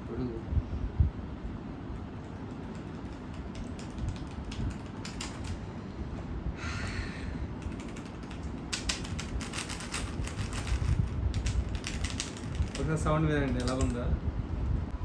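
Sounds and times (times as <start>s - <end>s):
keyboard typing: 2.2s - 5.6s.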